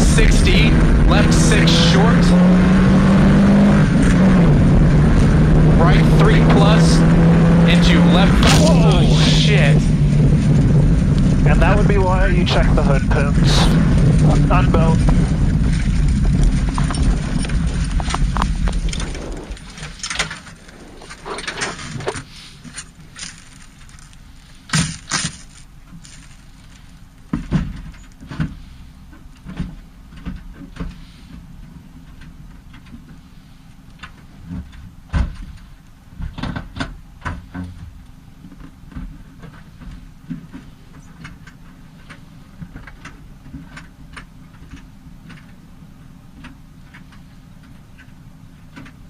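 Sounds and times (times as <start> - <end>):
car engine and road noise: 0.0 - 49.0
low steady hum: 0.0 - 49.0
harness buckles clicking and rattling: 15.6 - 28.5.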